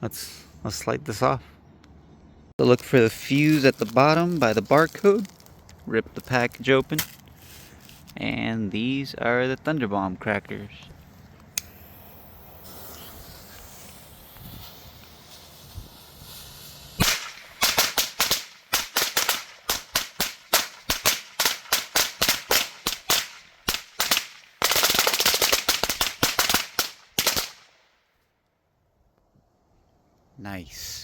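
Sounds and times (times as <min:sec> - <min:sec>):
firecrackers banging: 0:12.4 - 0:27.6.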